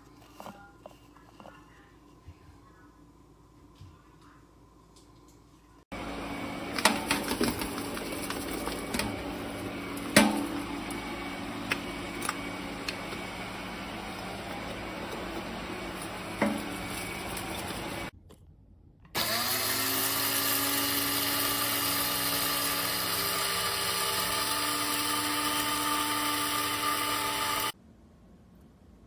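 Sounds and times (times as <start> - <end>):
coffee machine humming: 5.9 - 18.1, 19.2 - 27.8.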